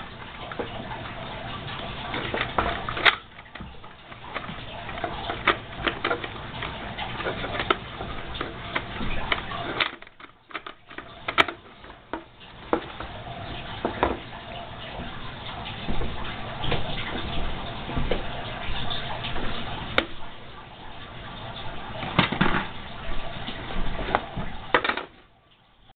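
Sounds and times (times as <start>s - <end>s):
plastic parts clicking and tapping: 1.7s - 14.3s, 22.0s - 22.7s, 24.0s - 25.3s.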